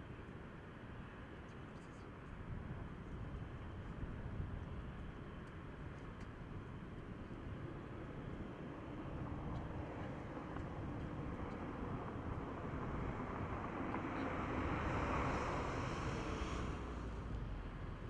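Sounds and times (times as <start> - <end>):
road noise: 8.6 - 18.0.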